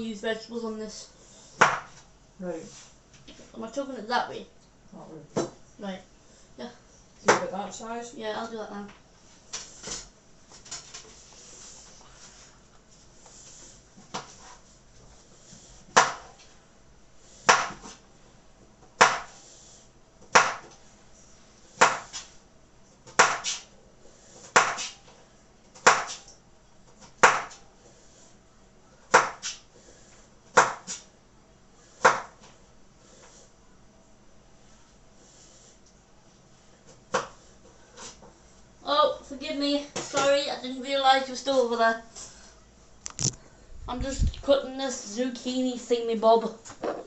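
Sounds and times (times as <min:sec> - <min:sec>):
knife chopping on board: 0:01.6 - 0:01.9, 0:15.9 - 0:16.3, 0:17.5 - 0:18.0, 0:19.0 - 0:19.4, 0:20.3 - 0:20.7, 0:21.8 - 0:22.3, 0:23.1 - 0:23.7, 0:24.4 - 0:25.0, 0:25.8 - 0:26.3, 0:27.0 - 0:27.6, 0:29.1 - 0:29.6, 0:30.5 - 0:31.0, 0:32.0 - 0:32.4, 0:37.1 - 0:37.4.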